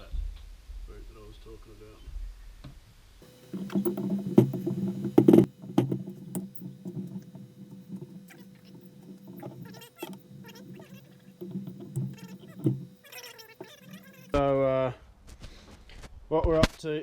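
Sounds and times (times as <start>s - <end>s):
steady low hum: 3.2s - 14.4s.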